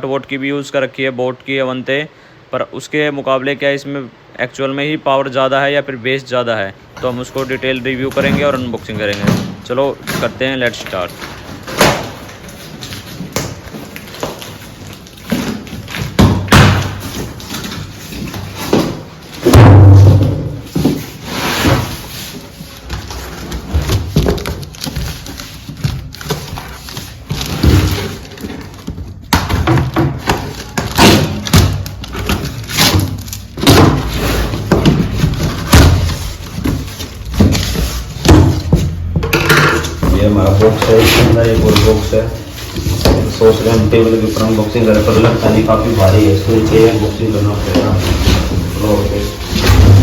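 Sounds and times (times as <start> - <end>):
thumps and knocks: 15.2 - 21.1, 42.8 - 43.9
dull bass-heavy thumps: 19.5 - 20.6.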